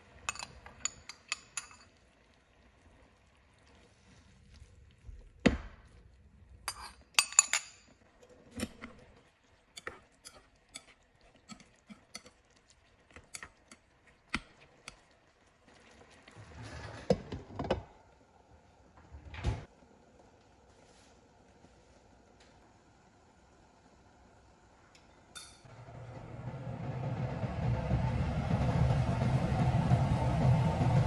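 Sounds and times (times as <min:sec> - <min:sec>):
utensils and dishes clinking: 0:00.2 - 0:01.9, 0:06.7 - 0:09.1, 0:25.1 - 0:25.7.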